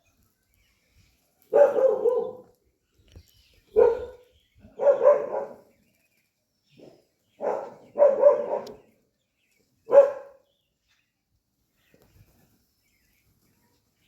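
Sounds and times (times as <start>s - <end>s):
dog barking: 1.5s - 2.5s, 3.7s - 4.2s, 4.8s - 5.7s, 6.8s - 8.8s, 9.9s - 10.4s.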